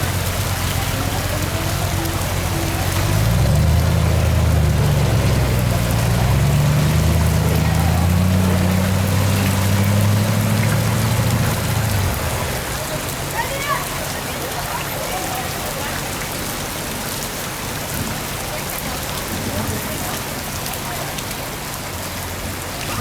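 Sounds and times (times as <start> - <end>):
low engine drone: 0.0 - 13.0
steady rain: 0.0 - 23.0.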